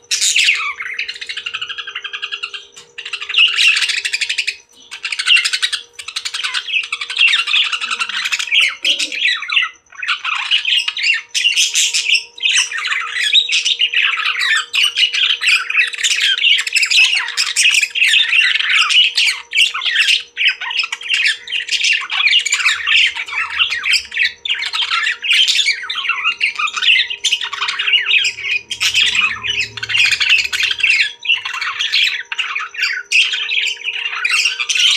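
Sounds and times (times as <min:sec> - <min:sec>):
parrots chirping and squawking: 0:00.0 - 0:34.9.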